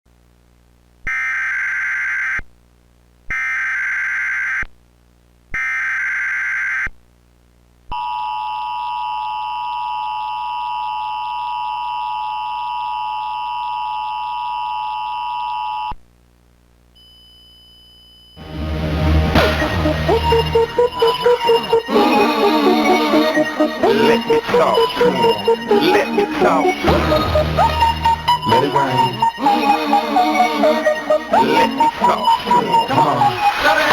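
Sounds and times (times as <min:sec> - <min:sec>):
two-tone attention signal: 0:18.4 - 0:33.9
digital data bursts: 0:19.7 - 0:33.9.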